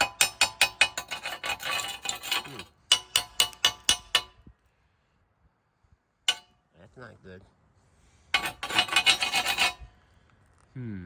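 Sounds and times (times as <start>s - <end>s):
scraping on metal: 0.0s - 4.4s, 6.3s - 6.5s, 8.3s - 10.0s.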